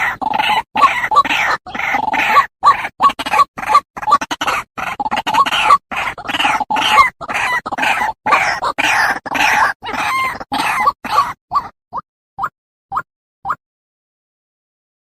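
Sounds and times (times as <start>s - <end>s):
bird calling harshly: 0.0s - 11.7s.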